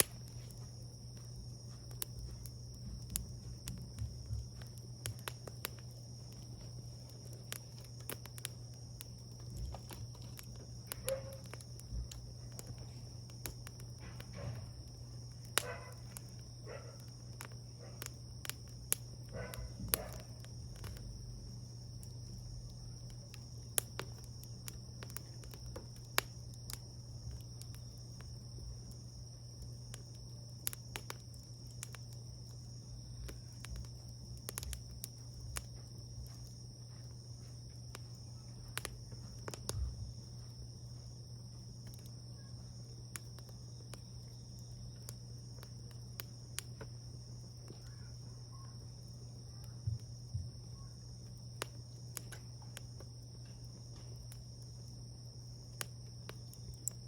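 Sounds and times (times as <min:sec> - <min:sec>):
high insect trill: 0:00.0 - 0:57.0
wood fire crackling and popping: 0:00.0 - 0:57.0.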